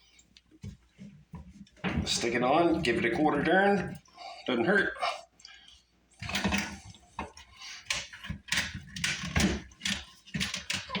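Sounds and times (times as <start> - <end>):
plastic pipe knocks and clatter: 0.6 - 3.2, 8.1 - 11.0.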